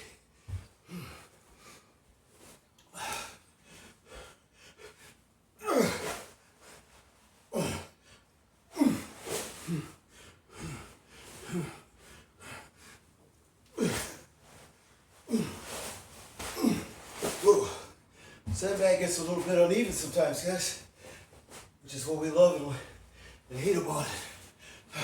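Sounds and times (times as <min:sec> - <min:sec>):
man grunting with exertion: 0:05.6 - 0:06.1, 0:07.6 - 0:07.9, 0:08.8 - 0:09.1, 0:16.6 - 0:17.9.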